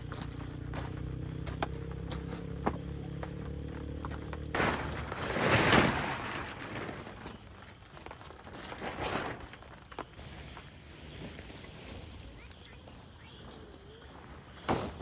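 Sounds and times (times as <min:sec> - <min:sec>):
rustling crinkling noise: 0:04.1 - 0:15.0.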